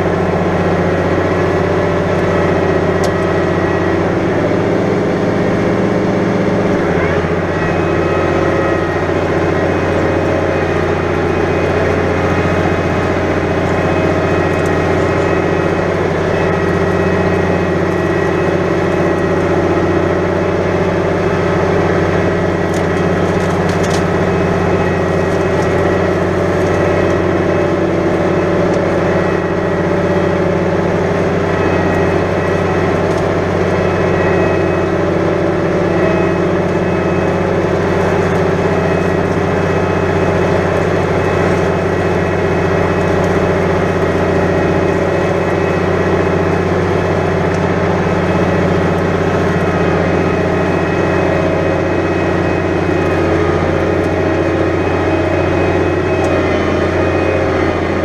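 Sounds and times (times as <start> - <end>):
tractor diesel engine running: 0.0 - 58.0.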